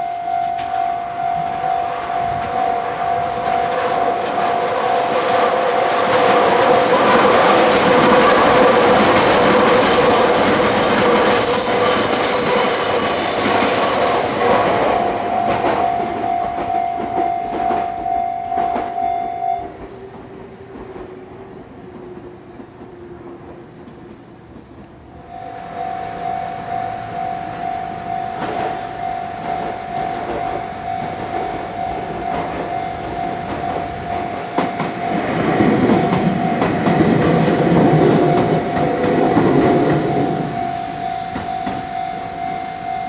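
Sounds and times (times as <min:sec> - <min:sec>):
level crossing alarm clanging: 0:00.0 - 0:20.1, 0:25.2 - 0:43.0
electric train passing: 0:00.0 - 0:43.0
high wheel squeal: 0:04.8 - 0:16.4, 0:25.2 - 0:43.0.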